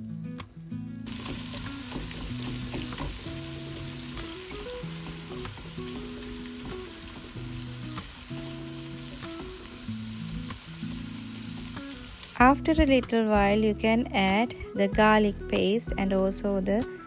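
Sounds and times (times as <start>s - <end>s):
soft background music: 0.0s - 17.0s
utensil tapping and scraping pan: 1.1s - 8.0s
vegetables sizzling in oil: 1.1s - 13.1s.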